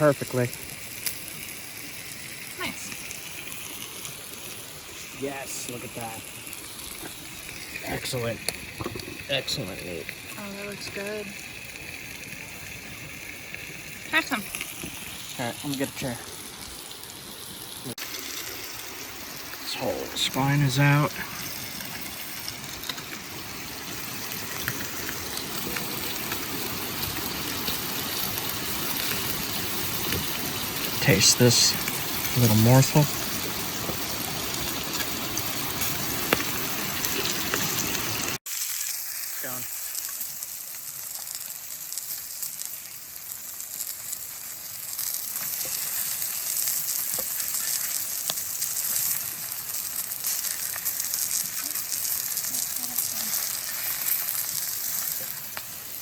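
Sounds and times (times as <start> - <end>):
stream flowing: 0.0 - 40.0
food sizzling in a frying pan: 0.0 - 56.0.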